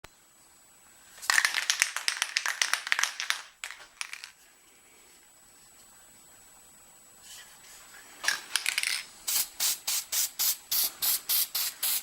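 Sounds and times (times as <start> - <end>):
crinkling handling noise: 1.2 - 4.5.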